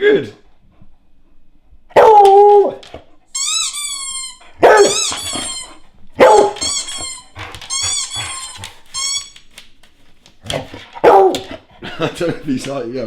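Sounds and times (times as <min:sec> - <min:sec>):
dog barking loudly: 0:01.9 - 0:02.8, 0:04.6 - 0:05.6, 0:06.2 - 0:07.0, 0:10.6 - 0:11.7
squeaky toy squeaks from tv: 0:03.3 - 0:09.6.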